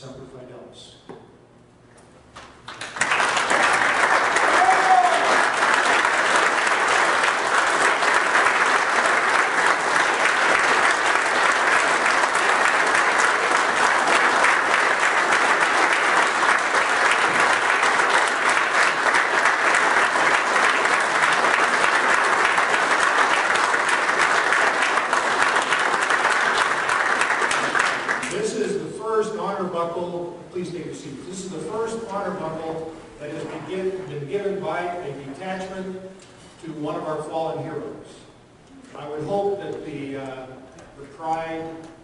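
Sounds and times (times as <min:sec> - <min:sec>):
large audience applauding: 0:02.7 - 0:28.4.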